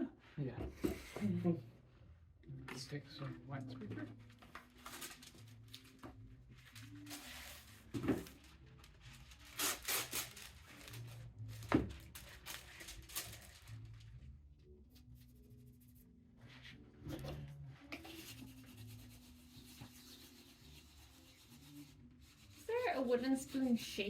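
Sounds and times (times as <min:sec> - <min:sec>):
wax paper rustling and tearing: 0:04.4 - 0:14.2.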